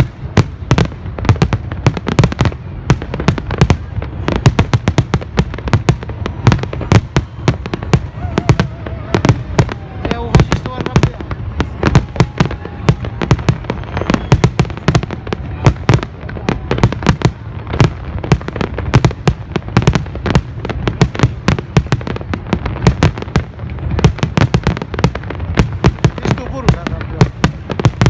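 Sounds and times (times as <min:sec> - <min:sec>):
distant explosions rumbling: 0:00.0 - 0:28.0
fireworks bangs and cracks: 0:00.0 - 0:28.0.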